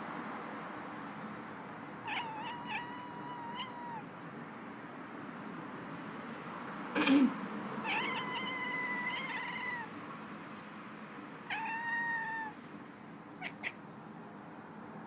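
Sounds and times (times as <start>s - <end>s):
cat meowing: 2.0s - 4.1s, 7.8s - 9.9s, 11.5s - 12.6s, 13.4s - 13.8s.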